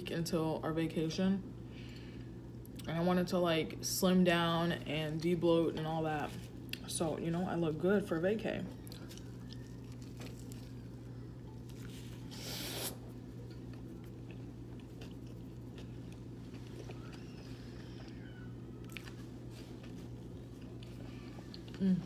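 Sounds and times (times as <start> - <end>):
steady low hum: 0.0 - 22.0
person chewing food: 8.7 - 22.0.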